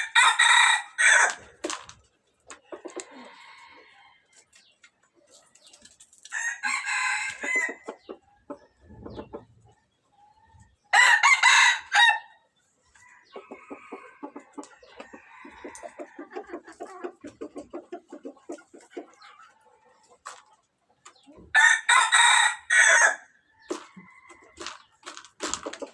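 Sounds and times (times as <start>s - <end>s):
rooster crowing: 0.0s - 1.4s, 6.3s - 7.8s, 10.9s - 12.3s, 21.6s - 23.3s
rapid clucking: 13.4s - 21.5s.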